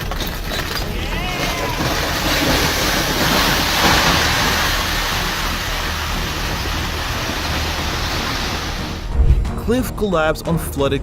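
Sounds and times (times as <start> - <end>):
loud steady rushing noise: 2.1 - 9.6.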